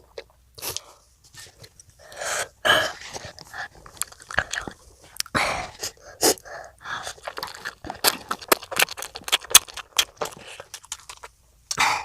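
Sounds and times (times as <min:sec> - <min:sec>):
child chewing: 0:00.0 - 0:12.0
wet mouth clicks and smacks: 0:07.2 - 0:11.8.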